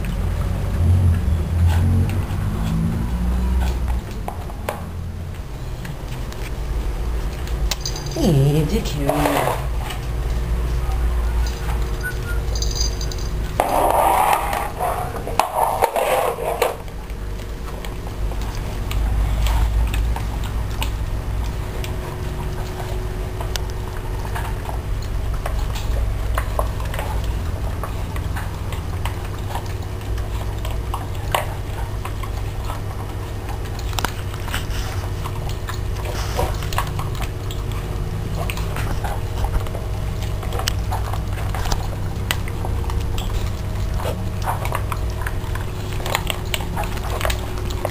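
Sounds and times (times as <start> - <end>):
steady low hum: 0.0 - 47.9
dog food clinking in bowls: 7.7 - 8.5, 11.3 - 13.6.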